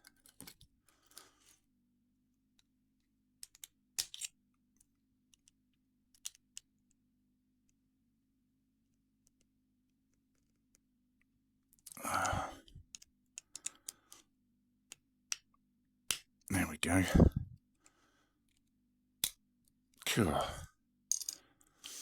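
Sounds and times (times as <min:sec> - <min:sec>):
tools clicking on a lock: 0:03.4 - 0:04.4, 0:06.1 - 0:06.7.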